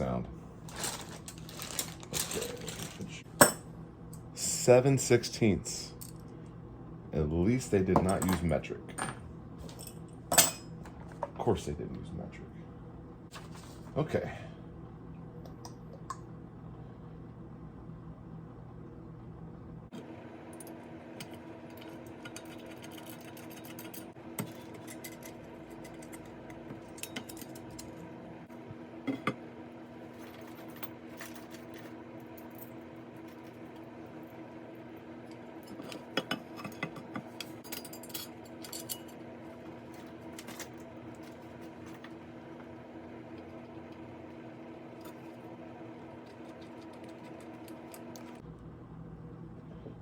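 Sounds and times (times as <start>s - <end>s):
steady low hum: 0.0s - 50.0s
metal parts and tools clinking: 0.7s - 3.6s, 35.6s - 39.2s.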